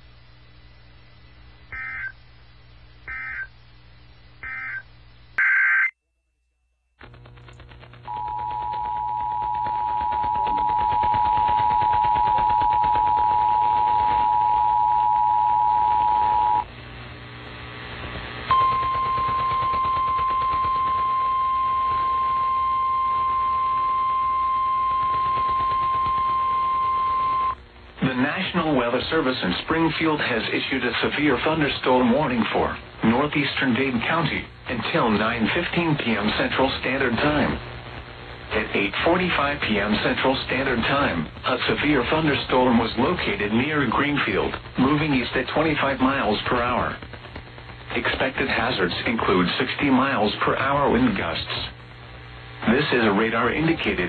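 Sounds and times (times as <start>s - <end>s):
hissy broadcast feed: 0.0s - 5.8s, 7.0s - 54.0s
steady loud alarm tone: 1.7s - 2.2s, 3.1s - 3.5s, 8.1s - 16.7s, 18.5s - 27.6s
buzzy digital tone bursts: 3.1s - 3.5s
two-tone attention signal: 18.5s - 27.6s.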